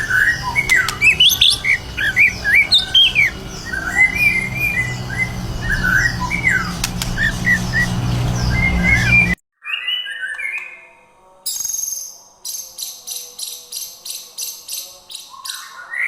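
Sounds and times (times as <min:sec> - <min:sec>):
steady low hum: 0:00.0 - 0:09.4
bird singing whistled notes: 0:00.0 - 0:10.8.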